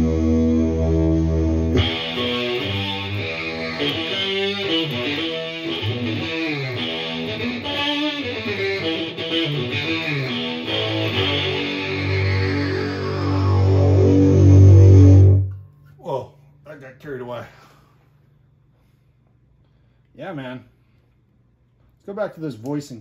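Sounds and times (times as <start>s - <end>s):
synth-like electric guitar: 0.0s - 15.5s.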